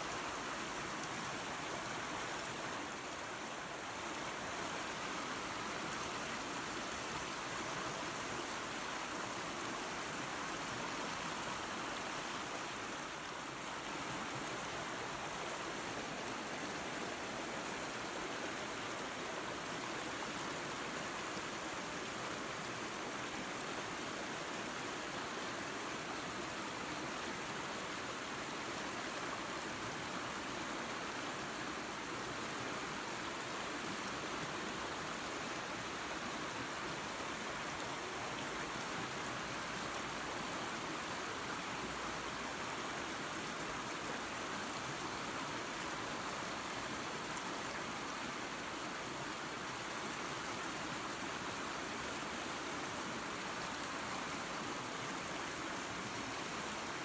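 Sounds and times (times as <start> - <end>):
waterfall and creek water rushing: 0.0 - 57.0.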